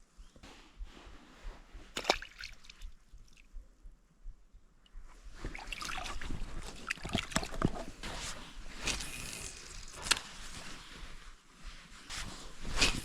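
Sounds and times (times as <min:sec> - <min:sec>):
water sloshing and trickling: 0:01.9 - 0:03.4, 0:05.4 - 0:08.0.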